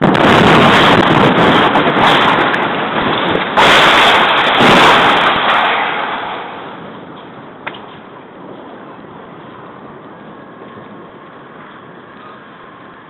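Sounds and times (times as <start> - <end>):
explosion blast roar: 0.0 - 10.0.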